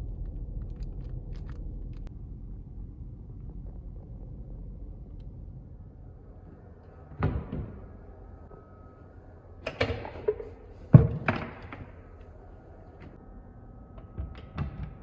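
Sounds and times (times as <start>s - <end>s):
objects knocking and thumping: 9.7s - 12.0s.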